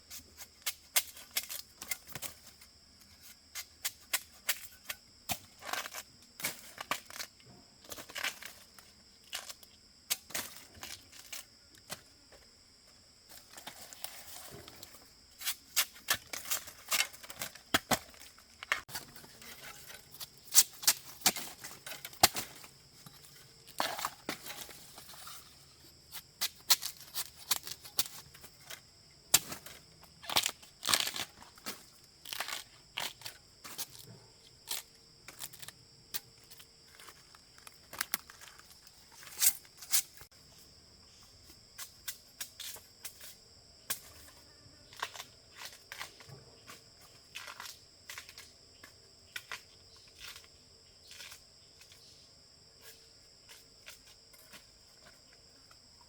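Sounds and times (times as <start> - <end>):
sharp snaps and knocks: 14.5 - 22.7.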